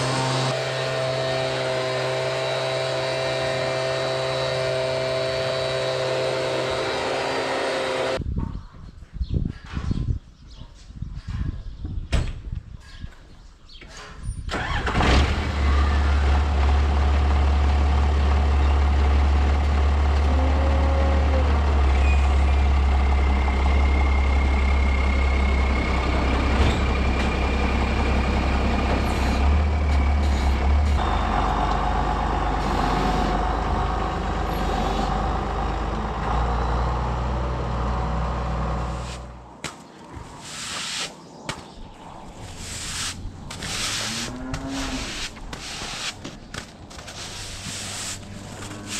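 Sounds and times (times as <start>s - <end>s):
tractor diesel engine idling: 14.6s - 39.0s.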